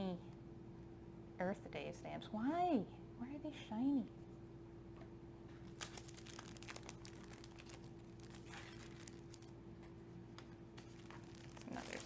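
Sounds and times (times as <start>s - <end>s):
paper sheets rustling and crinkling: 5.7s - 9.5s, 10.8s - 12.0s.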